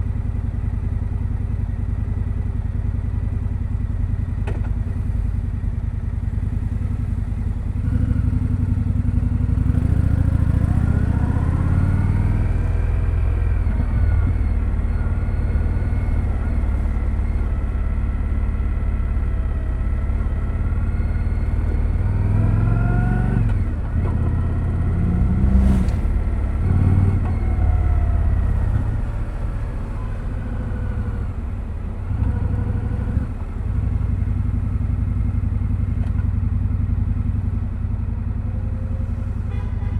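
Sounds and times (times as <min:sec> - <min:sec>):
motorcycle engine revving: 0:06.4 - 0:33.4.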